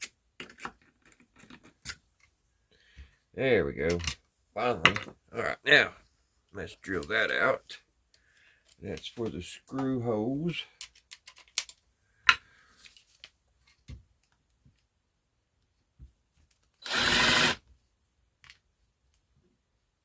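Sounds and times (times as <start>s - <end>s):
electric drill drilling into wood: 16.8s - 17.6s.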